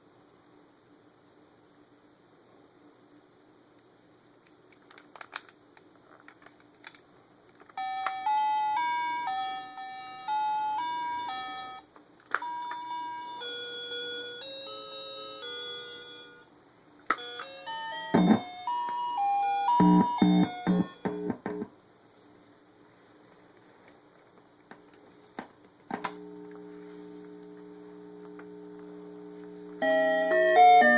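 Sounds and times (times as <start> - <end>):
toy beeping electronic tune: 17.2 - 21.3.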